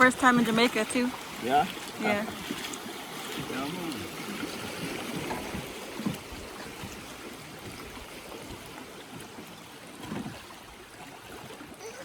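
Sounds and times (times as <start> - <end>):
river water rushing: 0.0 - 12.0.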